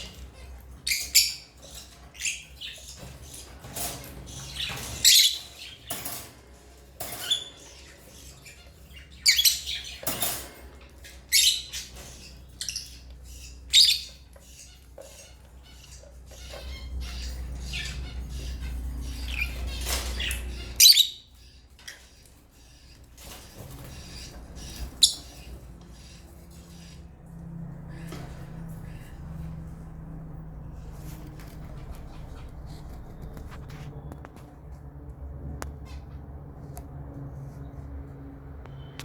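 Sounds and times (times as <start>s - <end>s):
lovebirds chirping: 7.2s - 10.2s, 11.0s - 27.3s.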